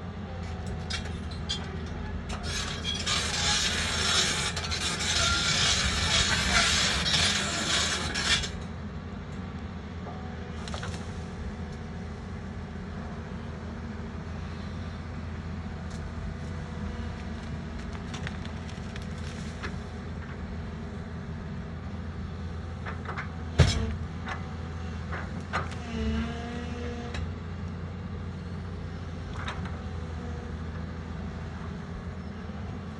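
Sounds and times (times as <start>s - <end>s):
excavator diesel engine rumbling: 0.0s - 32.9s
loud rasping scrape: 2.4s - 8.6s.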